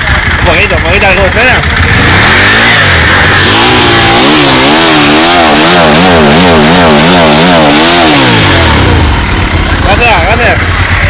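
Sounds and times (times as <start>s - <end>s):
motorcycle engine revving: 0.0s - 11.0s.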